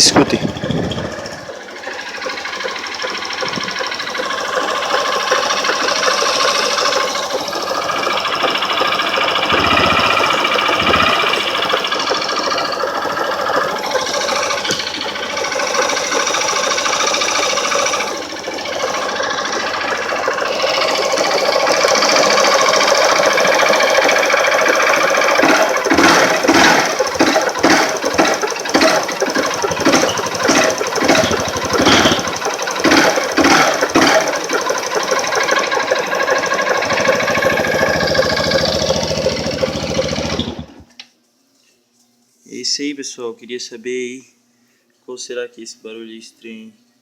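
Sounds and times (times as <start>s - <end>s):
motorcycle engine knocking: 0.0s - 40.8s.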